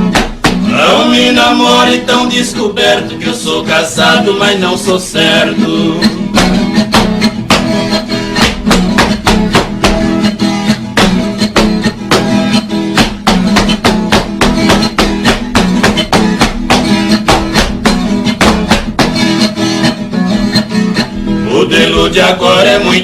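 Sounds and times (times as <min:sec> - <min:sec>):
acoustic guitars strummed: 0:00.0 - 0:23.0.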